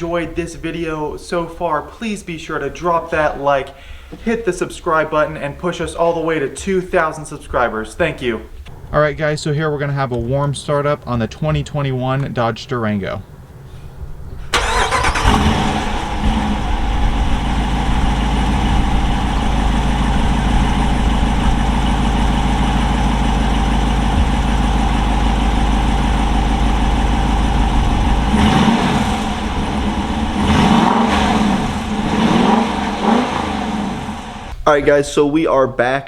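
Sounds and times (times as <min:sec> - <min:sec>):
car engine idling: 0:08.5 - 0:34.6
car engine revving: 0:14.5 - 0:34.5.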